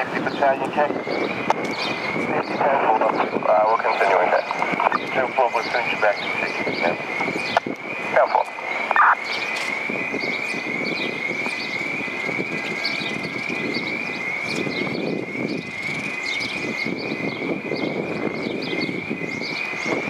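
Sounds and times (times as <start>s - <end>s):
street traffic: 0.0s - 20.0s.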